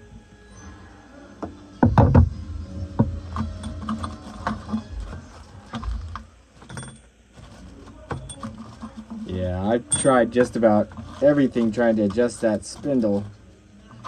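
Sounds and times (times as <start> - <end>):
tools and metal parts clinking: 3.3 - 13.3.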